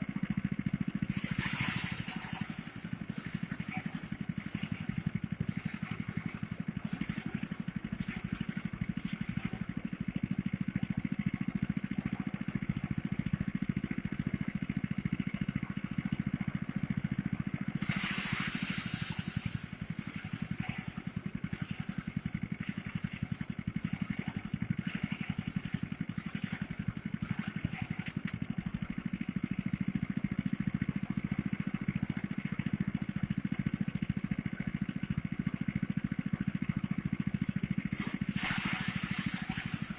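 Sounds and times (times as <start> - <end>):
thresher engine running: 0.0 - 39.9
harsh hissing rush: 17.8 - 19.7, 37.9 - 39.9.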